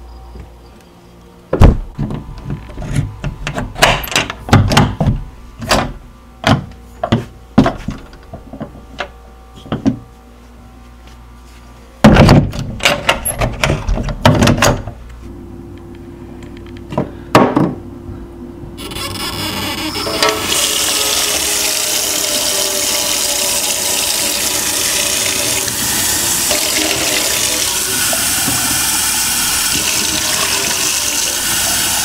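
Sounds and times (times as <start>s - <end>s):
heavy thud: 1.6s - 2.1s.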